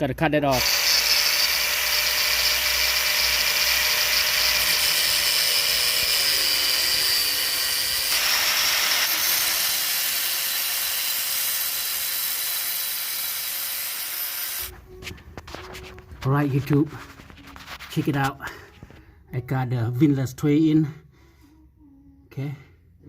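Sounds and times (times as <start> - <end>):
high-speed power tool whining: 0.5 - 14.7.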